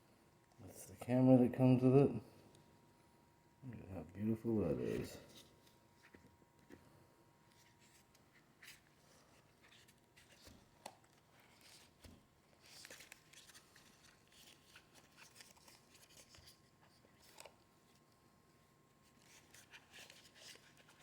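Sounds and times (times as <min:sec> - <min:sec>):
rustling of packaging: 0:07.5 - 0:21.0.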